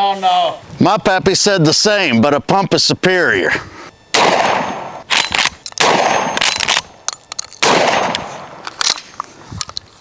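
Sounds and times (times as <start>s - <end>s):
shotgun shots echoing: 4.1s - 9.1s.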